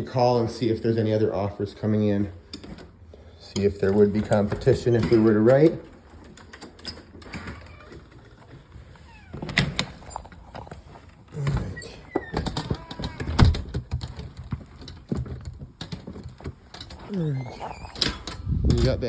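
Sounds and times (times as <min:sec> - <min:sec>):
door opening and shutting: 0:06.3 - 0:08.4, 0:09.0 - 0:19.0.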